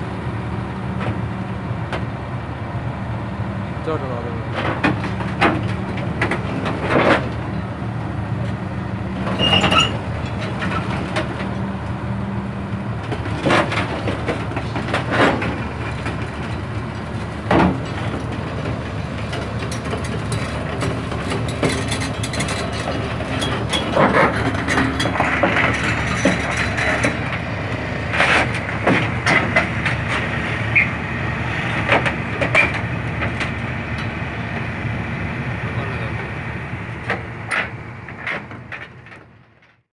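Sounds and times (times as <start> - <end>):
diesel engine running: 0.0 - 39.9
metal track clanks: 9.2 - 11.6, 13.0 - 34.6, 37.0 - 39.8.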